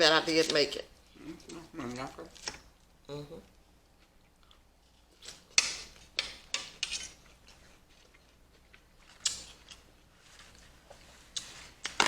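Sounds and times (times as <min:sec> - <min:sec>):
forks scraping a salad bowl: 0:05.2 - 0:08.2.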